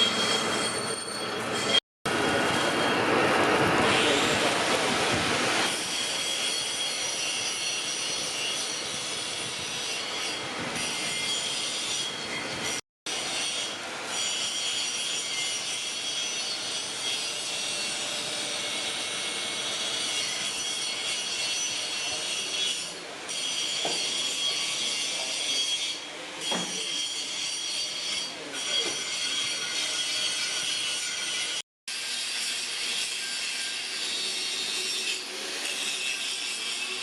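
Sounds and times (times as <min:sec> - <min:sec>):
high ringing tones: 0:00.0 - 0:03.0.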